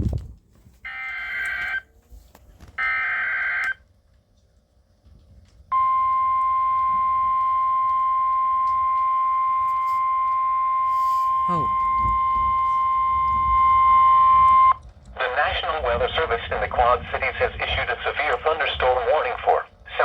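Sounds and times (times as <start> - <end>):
steady warning alert tone: 5.8 - 14.8.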